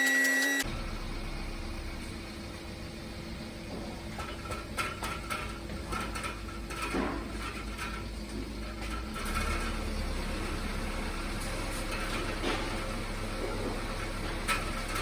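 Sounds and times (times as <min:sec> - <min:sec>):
car engine idling: 0:00.6 - 0:07.4
metallic muffler rattle: 0:03.6 - 0:15.0.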